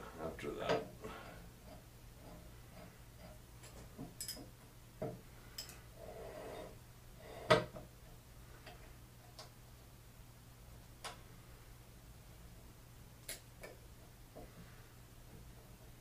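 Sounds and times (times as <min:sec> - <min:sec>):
faint steady hum: 0:00.0 - 0:16.0
tools and parts clicking and knocking: 0:03.2 - 0:05.8.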